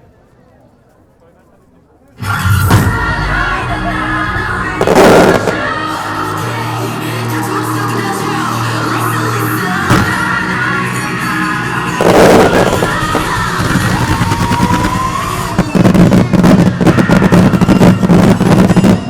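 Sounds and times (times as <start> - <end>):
fireworks bangs and crackles: 2.2 - 19.0
music over loudspeakers: 2.2 - 19.0.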